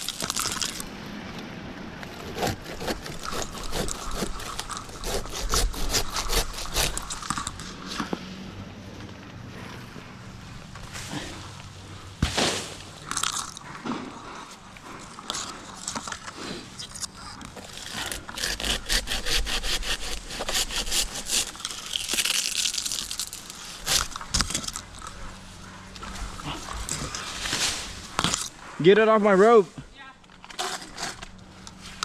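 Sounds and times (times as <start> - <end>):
dry fronds cracking and scraping: 0.0 - 1.4, 2.0 - 8.2, 10.6 - 28.6
hand saw cutting palm fronds: 2.1 - 7.8, 17.6 - 24.9.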